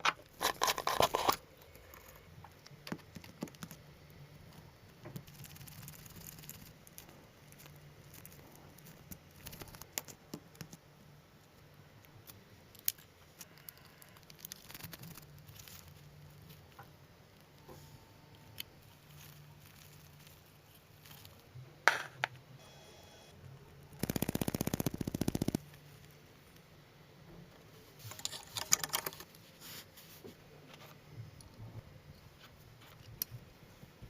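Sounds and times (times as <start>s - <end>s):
faint low hum: 0.0s - 34.0s
small clicks taps and scrapes: 2.0s - 3.8s, 28.0s - 29.4s.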